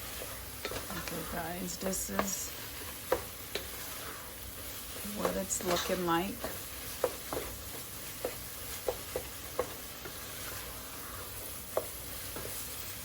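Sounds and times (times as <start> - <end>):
meat sizzling in a pot: 0.0 - 13.0
spoon knocking against pot: 8.2 - 9.8.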